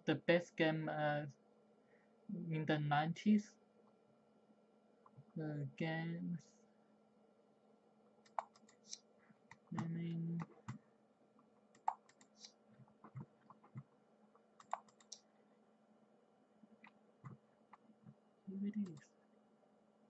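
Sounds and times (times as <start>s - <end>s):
faint computer clicking: 8.2s - 10.8s, 11.4s - 15.2s.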